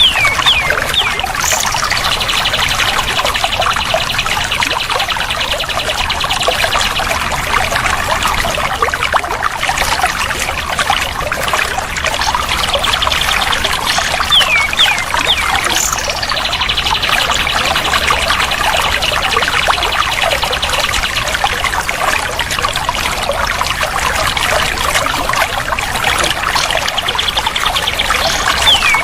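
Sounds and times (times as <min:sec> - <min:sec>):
bird singing trills: 0:00.0 - 0:07.1, 0:12.4 - 0:21.2, 0:26.6 - 0:29.0
water trickling and pouring: 0:00.0 - 0:29.0.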